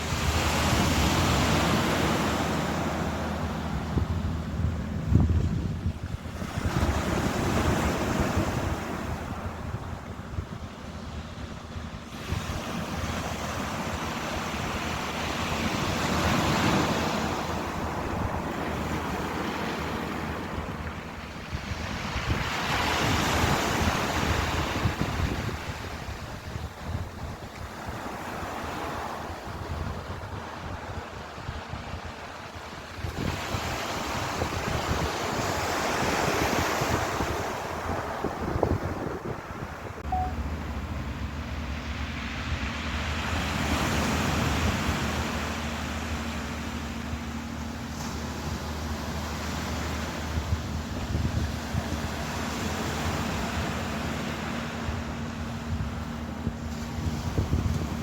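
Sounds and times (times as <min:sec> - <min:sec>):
ocean waves breaking on shore: 0:00.0 - 0:58.0
steady low rumble: 0:38.8 - 0:58.0.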